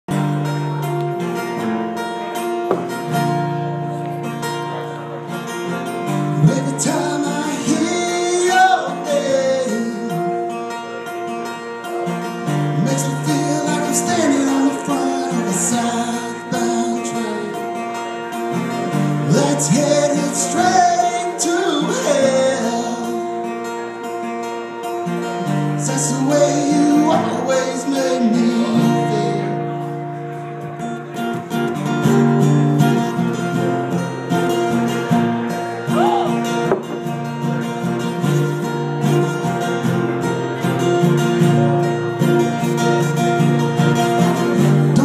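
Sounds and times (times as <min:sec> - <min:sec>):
guitar: 0:00.0 - 0:45.0
person singing: 0:06.4 - 0:10.8, 0:12.6 - 0:18.0, 0:19.2 - 0:23.5, 0:25.3 - 0:29.8.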